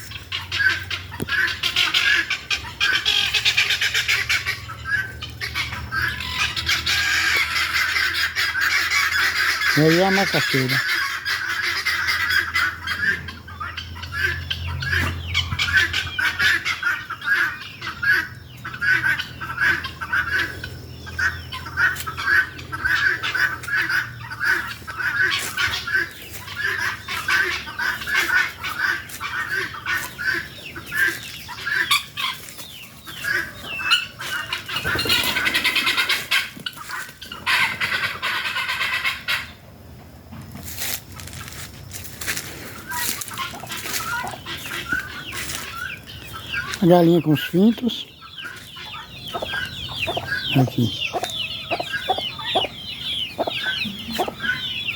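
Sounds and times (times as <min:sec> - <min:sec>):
guineafowl calling: 0:00.0 - 0:54.9.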